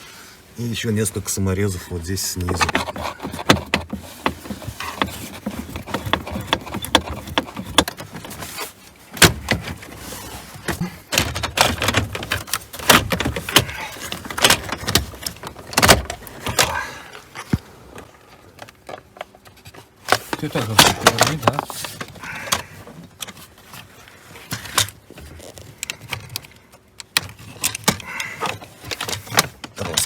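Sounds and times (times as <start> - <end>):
plastic trim clicking and rattling: 11.1 - 16.8.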